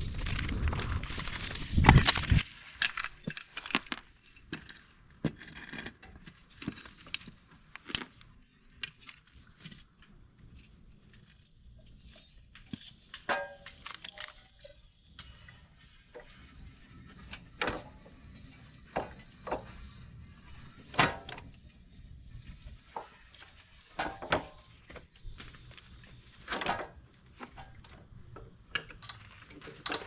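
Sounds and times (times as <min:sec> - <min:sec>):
tools and metal parts clinking: 0:00.2 - 0:07.1, 0:12.0 - 0:15.4, 0:22.9 - 0:30.0.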